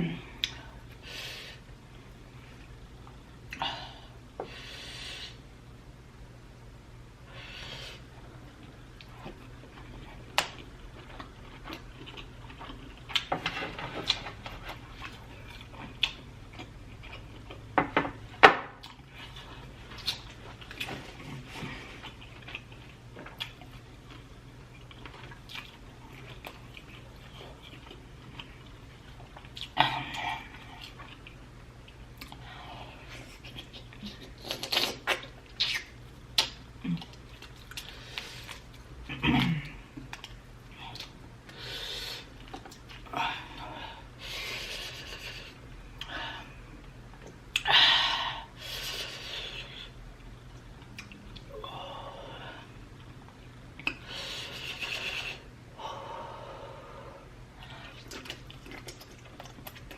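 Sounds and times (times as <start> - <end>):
chewing and biting food: 8.6 - 17.8, 57.6 - 59.9.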